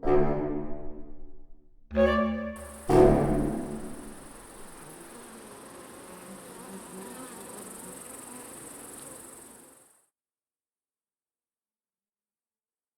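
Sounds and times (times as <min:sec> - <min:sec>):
insects shrilling: 0:02.6 - 0:09.9.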